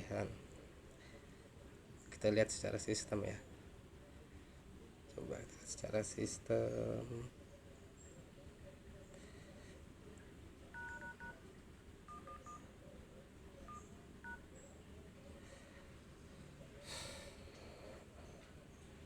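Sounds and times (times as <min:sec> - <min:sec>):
phone keypad beeps: 0:10.8 - 0:11.4, 0:12.1 - 0:12.7, 0:13.6 - 0:14.5.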